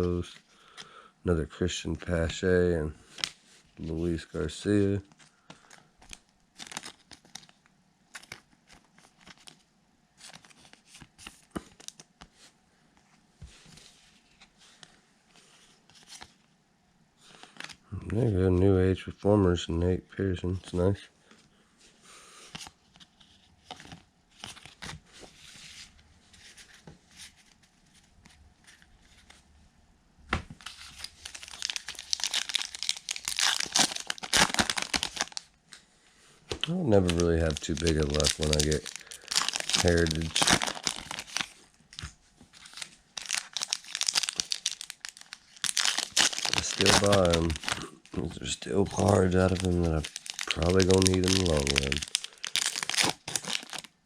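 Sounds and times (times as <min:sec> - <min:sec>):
foil wrapper tearing and crinkling: 0:06.1 - 0:08.4, 0:30.6 - 0:35.5, 0:36.9 - 0:54.0.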